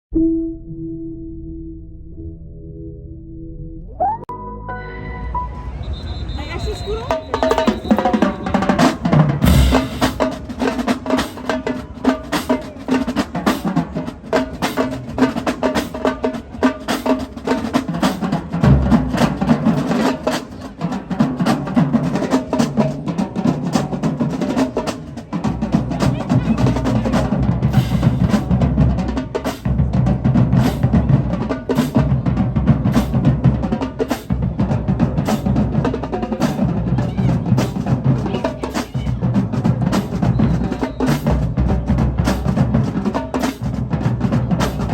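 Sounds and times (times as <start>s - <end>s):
bass drums: 5.7s - 12.0s, 25.2s - 44.9s
snare drum strokes and rolls: 5.8s - 44.9s.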